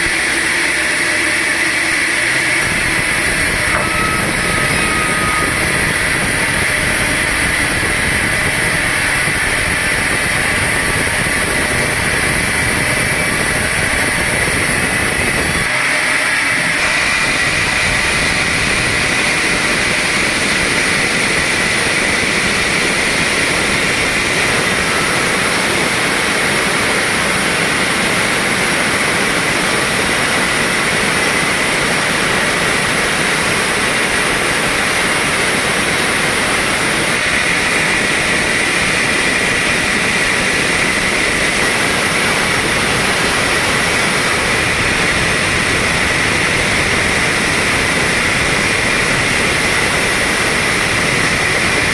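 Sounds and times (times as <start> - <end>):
sawmill saw whining: 0.0 - 51.9.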